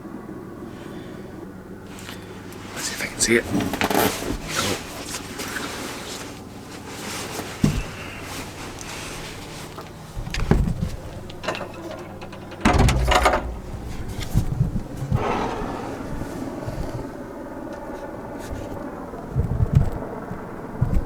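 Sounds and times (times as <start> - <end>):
distant helicopter rumble: 7.8 - 20.8
rustling and knocks on microphone: 10.2 - 15.4.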